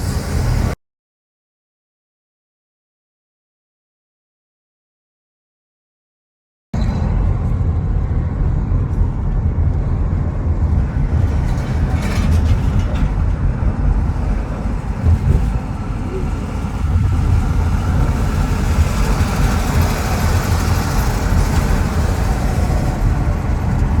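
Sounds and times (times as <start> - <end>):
car road noise rumble: 6.8 - 24.0.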